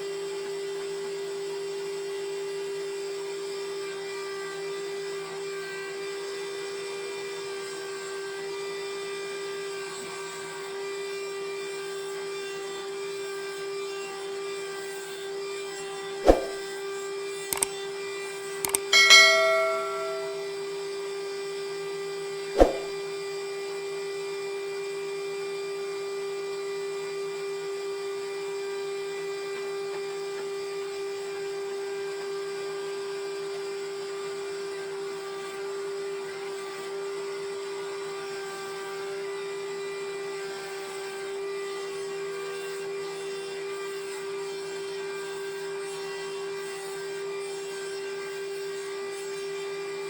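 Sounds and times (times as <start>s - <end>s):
sharp knock: 16.3s - 16.6s, 18.7s - 20.5s, 22.6s - 22.9s.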